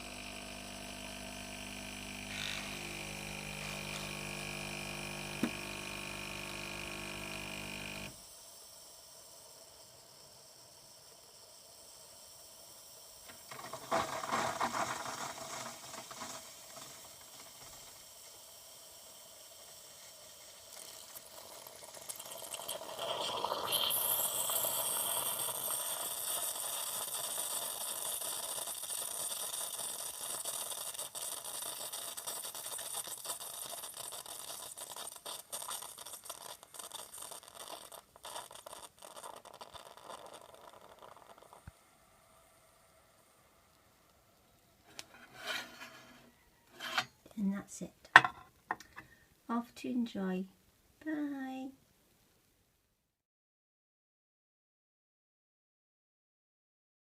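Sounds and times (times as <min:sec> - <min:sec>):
hot water and steam hissing: 0:00.0 - 0:44.2
coffee machine spluttering: 0:00.2 - 0:08.1, 0:13.3 - 0:41.7.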